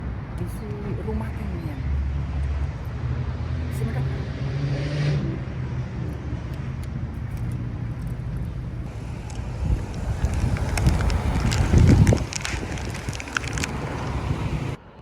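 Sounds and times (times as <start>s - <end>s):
car engine humming: 5.2s - 14.8s
low rumble: 5.3s - 15.0s.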